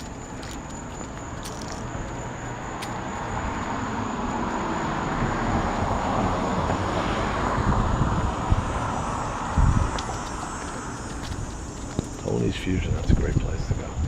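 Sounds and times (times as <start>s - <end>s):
vehicle passing by: 1.9s - 12.9s.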